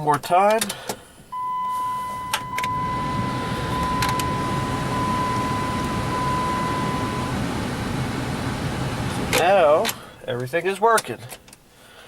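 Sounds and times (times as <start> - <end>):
steady high tone: 1.4 - 8.8
heater blower fan rushing: 1.8 - 10.2
heater controls clicking: 2.2 - 11.6.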